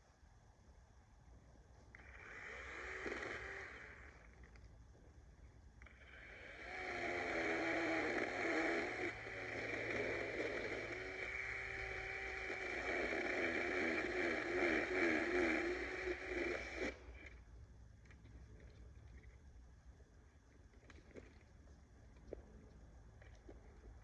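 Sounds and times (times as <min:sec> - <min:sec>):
chainsaw cutting tree limb: 0:02.0 - 0:04.2, 0:05.9 - 0:17.3.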